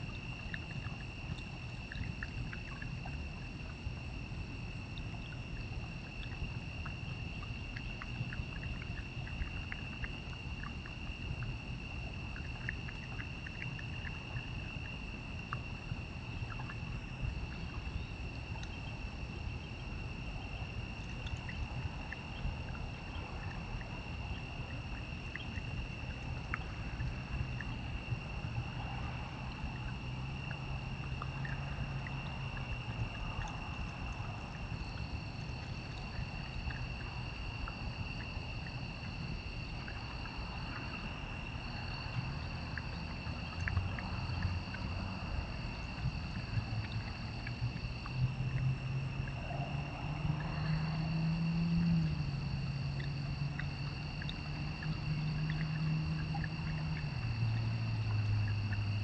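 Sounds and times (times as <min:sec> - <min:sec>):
faint ticks: 0:00.0 - 0:19.0, 0:50.3 - 0:59.0
night insects trilling: 0:00.0 - 0:59.0.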